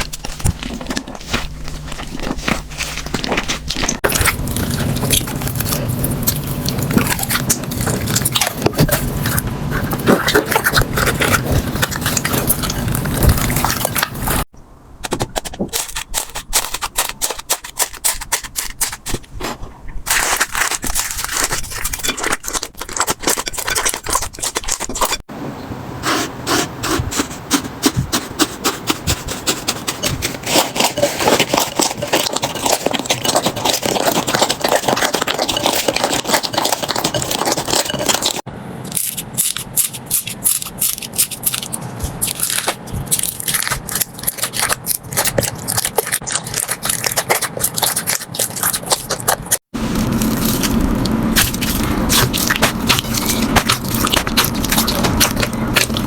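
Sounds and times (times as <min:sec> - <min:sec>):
slime scraping: 0:00.0 - 0:14.5, 0:15.1 - 0:25.3, 0:26.0 - 0:56.0
slime crackling and popping: 0:30.8 - 0:56.0.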